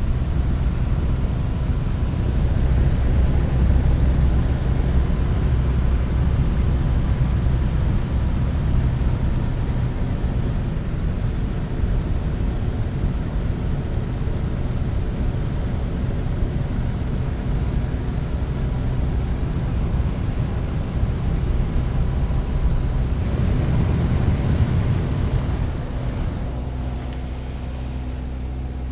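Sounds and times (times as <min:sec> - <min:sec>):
propeller plane engine drone: 0:00.0 - 0:28.9
wind rush: 0:20.4 - 0:26.8.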